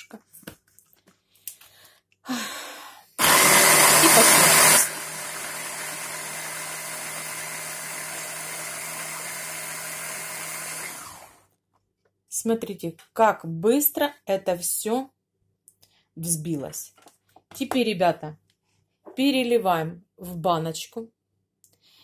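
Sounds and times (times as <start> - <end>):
electric blender running: 3.2 - 11.5.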